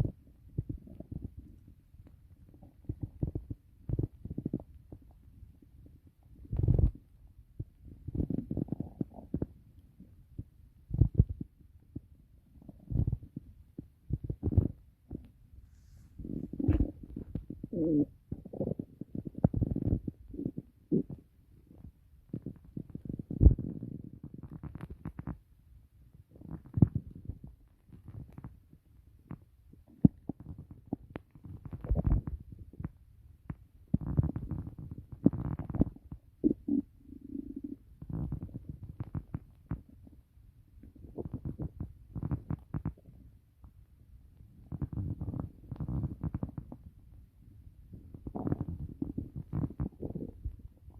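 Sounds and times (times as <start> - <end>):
stomach growling: 0.0 - 25.5, 26.1 - 43.8, 44.4 - 50.9.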